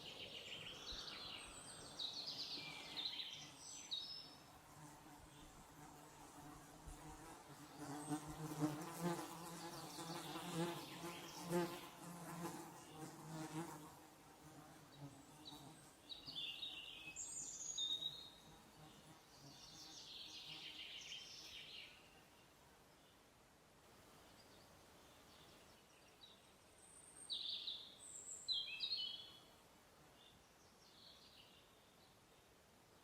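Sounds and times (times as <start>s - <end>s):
songbirds chirping: 0.0s - 33.0s
flying insect buzzing: 4.8s - 15.9s.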